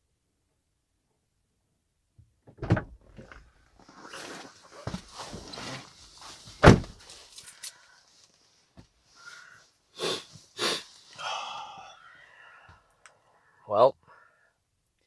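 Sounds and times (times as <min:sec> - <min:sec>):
handling and rustling: 0:03.1 - 0:09.0
heavy thump: 0:06.6 - 0:07.0
short loud puffs: 0:10.0 - 0:11.6.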